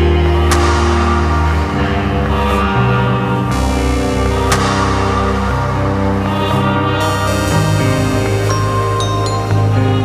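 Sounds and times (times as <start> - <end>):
electronic music with bass line: 0.0 - 10.0.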